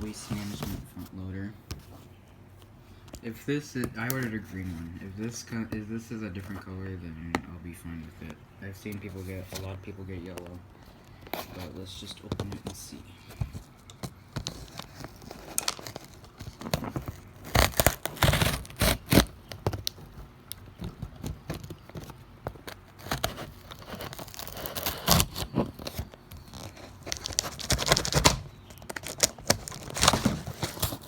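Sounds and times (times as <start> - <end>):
packing material crinkling: 8.1 - 31.0
package being torn open: 14.5 - 20.0, 23.0 - 31.0.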